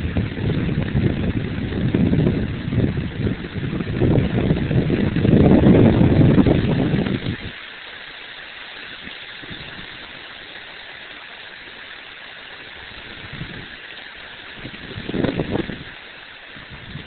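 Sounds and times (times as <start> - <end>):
wind blowing: 0.0 - 7.6, 8.9 - 10.8, 12.6 - 17.0
wind buffeting microphone: 0.0 - 7.6, 9.0 - 10.2, 12.9 - 13.8, 14.5 - 17.0.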